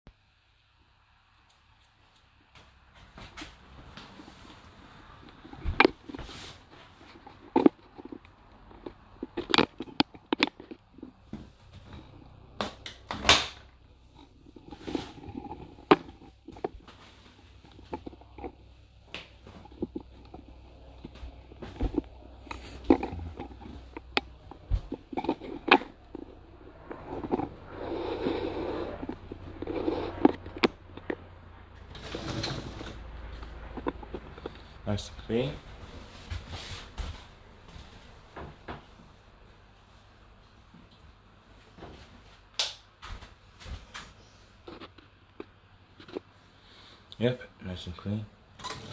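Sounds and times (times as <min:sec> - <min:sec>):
dishes and racks clattering: 0:48.6 - 0:48.9.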